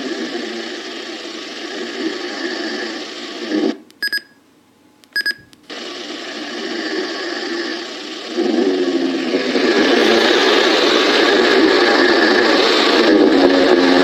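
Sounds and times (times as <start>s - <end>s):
static-like hiss: 0.0s - 4.0s, 5.1s - 14.0s
short high-pitched electronic beeps: 4.0s - 4.4s, 5.2s - 5.5s.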